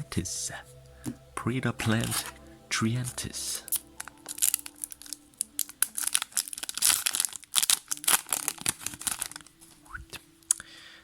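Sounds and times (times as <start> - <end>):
foil wrapper tearing and crinkling: 3.7 - 9.9.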